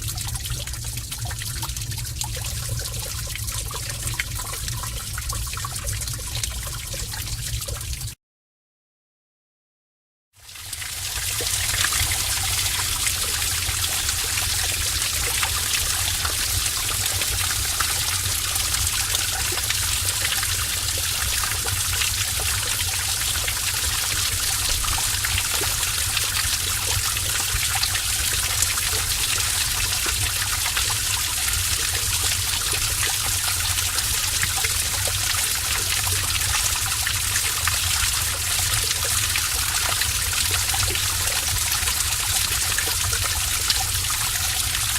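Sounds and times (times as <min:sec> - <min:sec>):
water rushing in a cave: 0:10.5 - 0:44.9.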